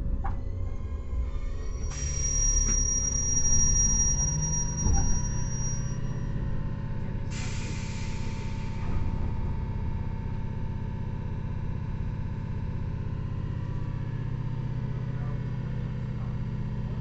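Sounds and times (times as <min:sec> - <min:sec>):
high steady squeal: 0:00.4 - 0:06.6.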